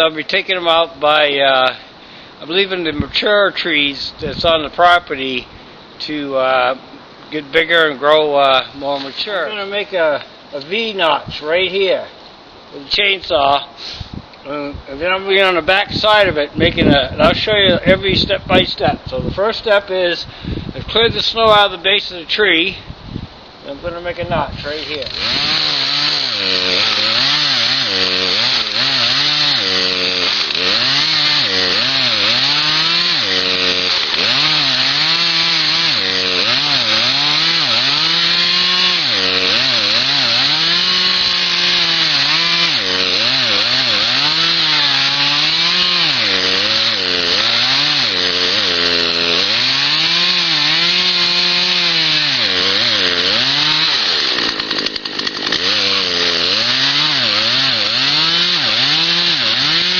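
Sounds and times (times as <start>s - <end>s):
chainsaw cutting wood: 24.6s - 59.9s.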